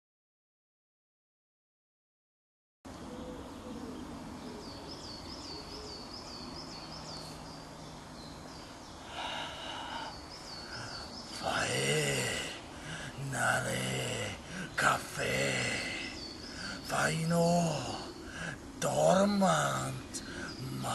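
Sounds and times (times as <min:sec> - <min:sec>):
background hiss: 0:02.9 - 0:20.9.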